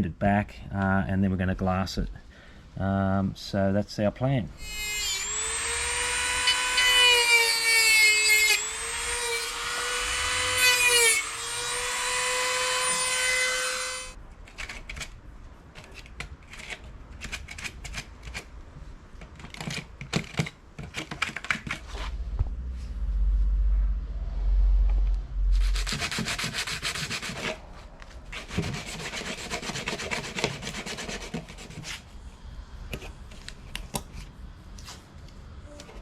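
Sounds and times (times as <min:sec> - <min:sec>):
rotary tool cutting whine: 0:04.6 - 0:14.2
hand scraping strokes: 0:21.8 - 0:33.5.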